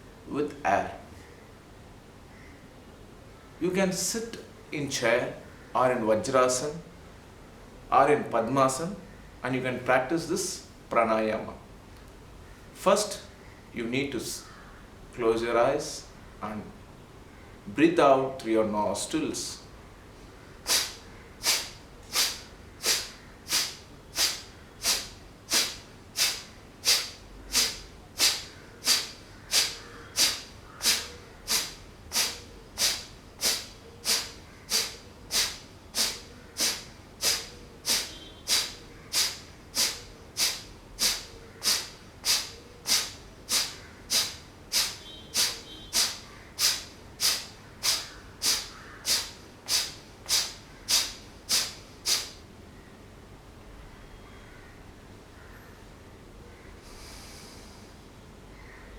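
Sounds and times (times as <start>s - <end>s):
forceful nasal exhalations: 20.6s - 52.4s, 56.8s - 57.9s.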